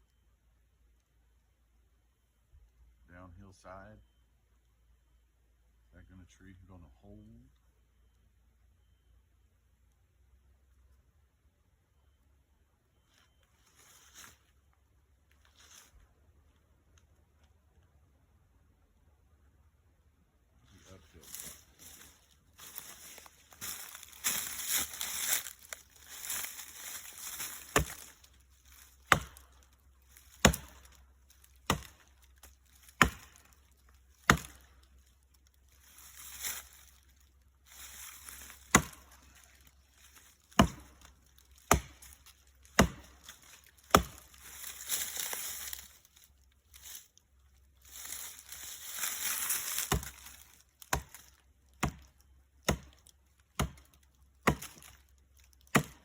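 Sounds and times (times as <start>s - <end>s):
rustling: 20.6s - 51.5s
axe chopping tree trunk: 23.6s - 33.6s, 34.2s - 34.8s, 37.8s - 39.3s, 40.4s - 45.9s, 48.0s - 56.0s.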